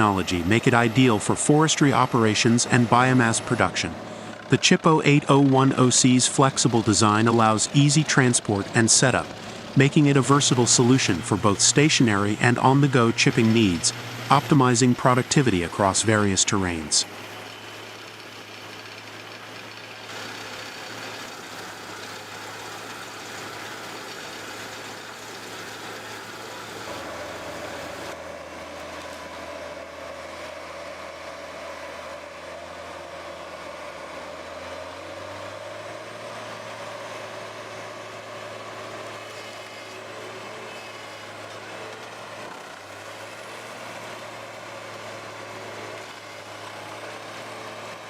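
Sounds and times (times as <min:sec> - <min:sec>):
diesel engine humming: 0:00.0 - 0:48.0.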